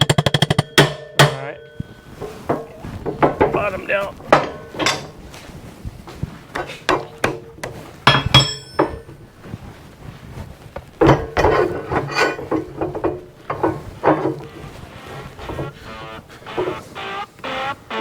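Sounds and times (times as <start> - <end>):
loud ringing clang: 0.0 - 5.2, 8.1 - 9.1
steel parts clanking: 0.0 - 5.5, 6.6 - 9.3, 11.0 - 18.0.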